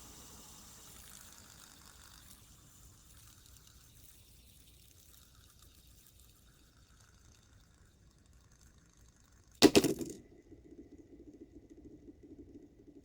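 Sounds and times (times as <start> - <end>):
fidget spinner whirring: 0.8 - 13.0
loud clatter: 9.6 - 10.2.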